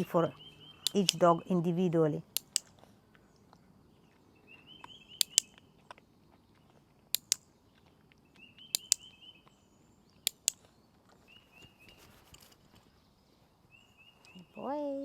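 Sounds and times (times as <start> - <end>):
birds chirping: 0.0 - 15.0
dog-training clicker double clicks: 2.3 - 2.7, 5.2 - 5.5, 10.2 - 10.6.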